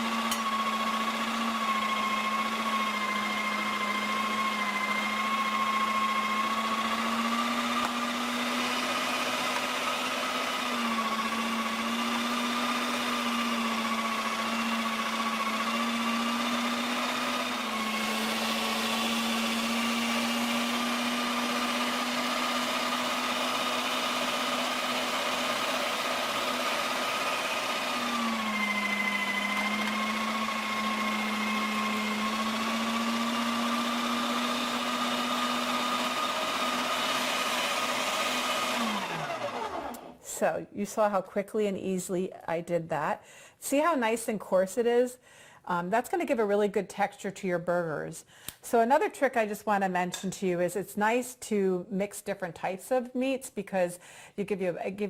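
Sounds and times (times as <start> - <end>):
electric meat grinder running: 0.0 - 40.2.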